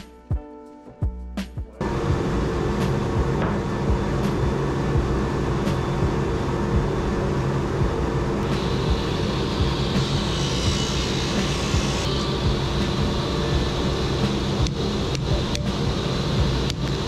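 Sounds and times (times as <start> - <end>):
woodworking machine motor hum: 1.8 - 17.0
high hiss: 8.4 - 17.0.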